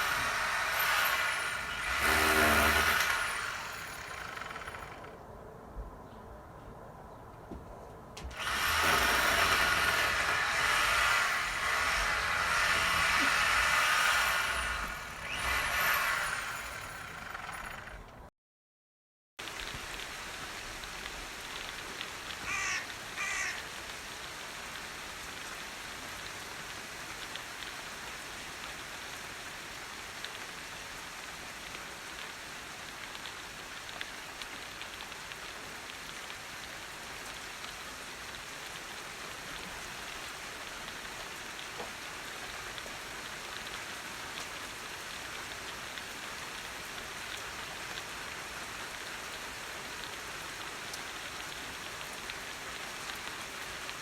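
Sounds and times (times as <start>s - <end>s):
steady rain falling: 0.0s - 5.2s, 19.4s - 54.0s.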